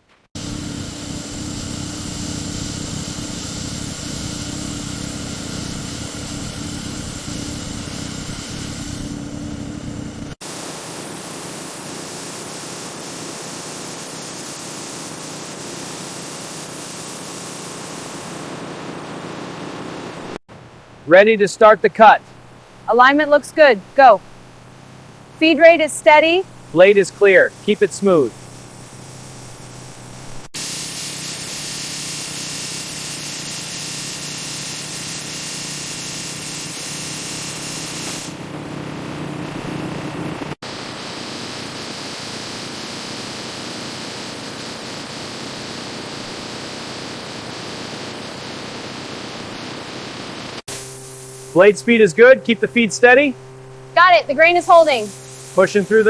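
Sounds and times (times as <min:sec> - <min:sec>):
steady hiss of noise: 0:00.0 - 0:38.4, 0:40.5 - 0:56.0
sawmill saw cutting log: 0:00.4 - 0:18.2, 0:24.9 - 0:29.0, 0:30.6 - 0:40.6, 0:50.7 - 0:56.0.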